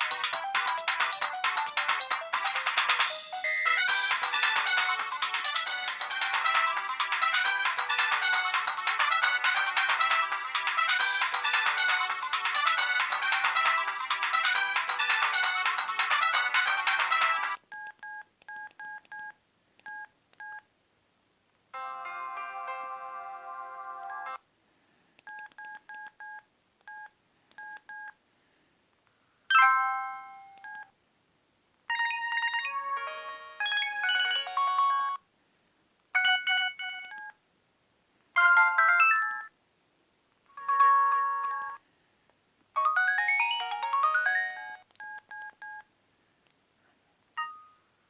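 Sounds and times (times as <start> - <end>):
phone ringtone melodies: 0.0 - 17.6, 21.8 - 24.4, 29.5 - 30.9, 31.9 - 35.2, 36.2 - 37.3, 38.4 - 39.5, 40.6 - 41.8, 42.8 - 44.8, 47.4 - 47.8
chimes: 29.5 - 30.6.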